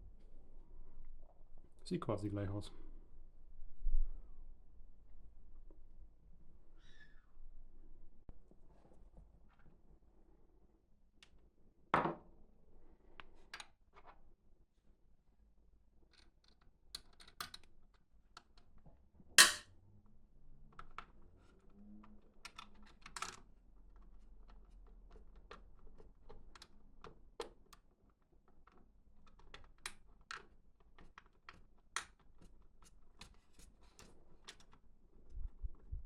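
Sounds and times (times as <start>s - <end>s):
sharp loud clack: 19.4s - 19.6s.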